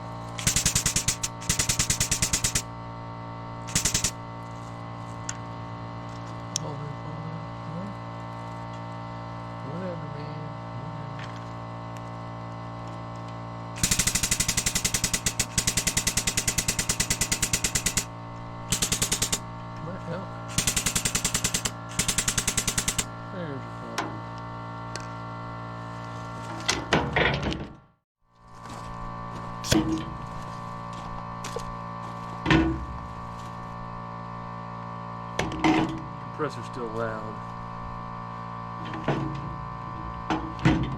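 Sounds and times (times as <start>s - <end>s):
air compressor humming: 0.0s - 26.9s, 28.4s - 40.9s
air grease gun rattling: 0.3s - 2.8s, 3.6s - 4.4s, 13.8s - 19.8s, 20.4s - 23.2s.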